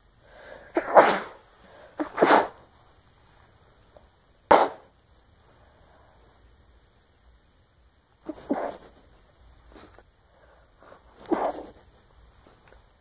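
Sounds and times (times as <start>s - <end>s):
woman breathing in: 0.2s - 0.7s
woman sneezing: 0.7s - 1.4s, 2.0s - 2.6s.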